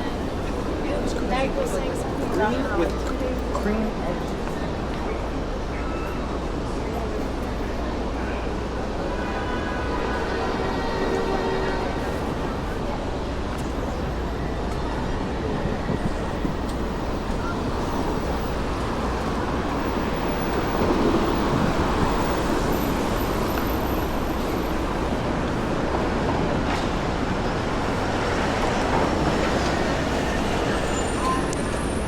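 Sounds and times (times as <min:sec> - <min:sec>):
passing vehicles: 0:09.9 - 0:32.0.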